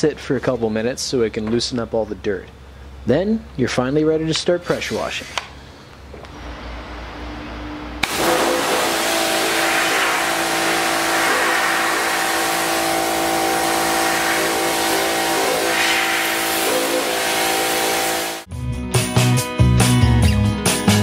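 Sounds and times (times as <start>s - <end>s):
high-pressure water spray hiss: 8.0s - 18.5s
pressure washer pump hum: 8.0s - 18.5s.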